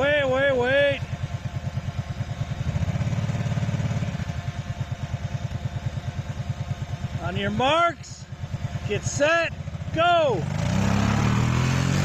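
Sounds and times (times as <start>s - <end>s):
vehicle engine idling: 0.0s - 10.9s.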